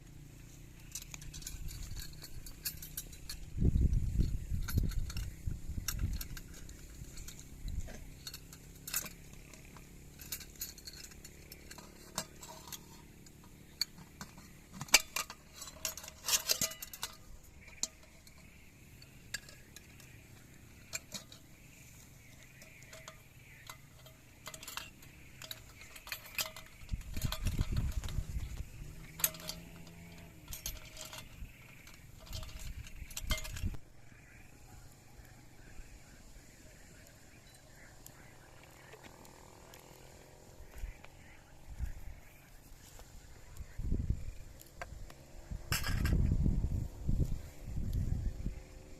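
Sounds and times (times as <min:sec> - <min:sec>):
metal utensils clinking on dishes: 0:00.8 - 0:33.8.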